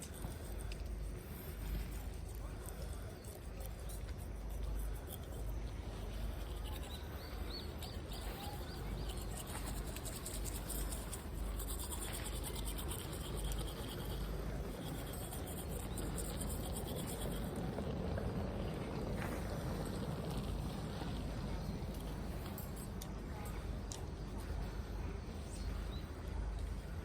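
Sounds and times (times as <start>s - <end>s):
toothbrush scrubbing teeth: 0.0s - 18.7s.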